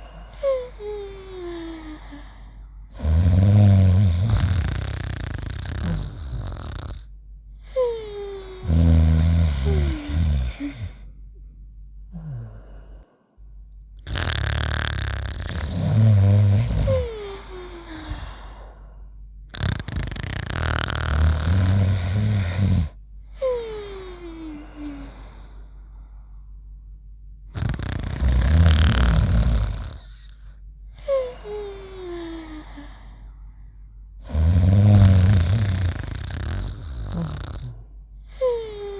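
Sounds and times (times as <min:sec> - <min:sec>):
loud rasping snore: 0:03.0 - 0:07.1, 0:08.6 - 0:10.9, 0:14.0 - 0:17.1, 0:19.5 - 0:23.0, 0:27.5 - 0:30.2, 0:34.2 - 0:37.8.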